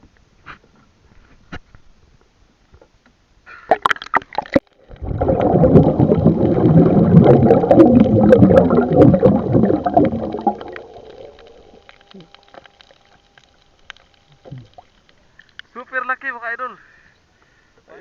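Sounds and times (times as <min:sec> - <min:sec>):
underwater air bubbles gurgling: 0:03.8 - 0:13.2.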